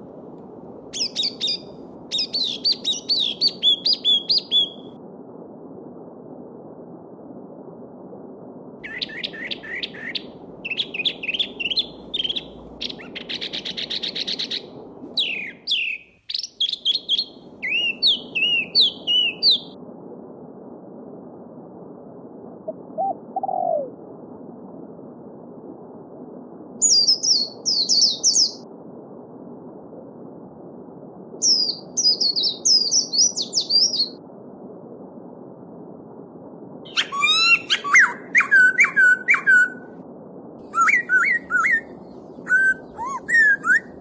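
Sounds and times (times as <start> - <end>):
low falling bird call: 8.8 - 19.7, 40.7 - 44.0
songbirds chirping and trilling: 8.8 - 19.7, 40.8 - 43.9
babbling stream: 42.5 - 44.0
very high chirps: 42.5 - 44.0.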